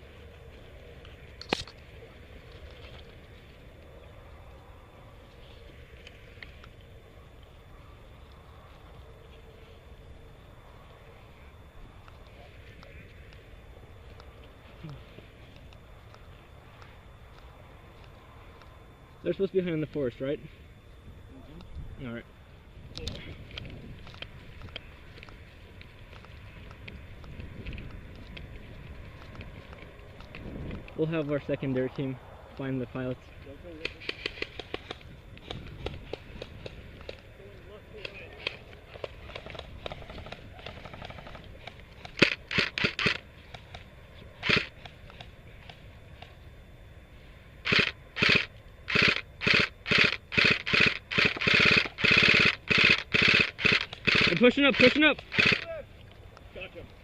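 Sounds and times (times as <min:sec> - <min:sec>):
footsteps crunching undergrowth: 0:23.3 - 0:46.4
wind on microphone: 0:26.0 - 0:31.0, 0:34.7 - 0:37.1.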